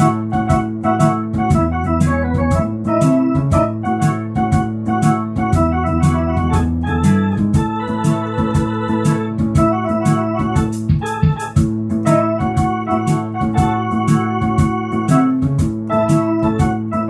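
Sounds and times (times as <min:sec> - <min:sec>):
electronic organ melody: 0:00.0 - 0:17.0
shuffle drum rhythm: 0:00.0 - 0:17.0.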